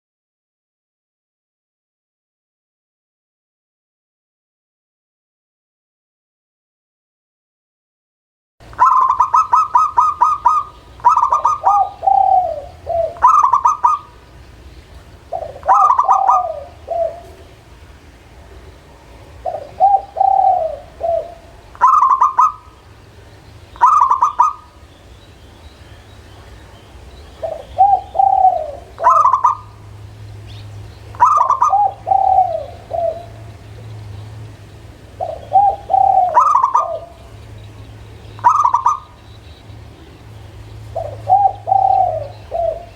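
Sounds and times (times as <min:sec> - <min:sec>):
dove cooing: 0:08.7 - 0:17.7, 0:18.4 - 0:23.0, 0:23.8 - 0:24.9, 0:26.4 - 0:33.9, 0:35.0 - 0:37.5, 0:38.4 - 0:39.2, 0:40.8 - 0:42.9.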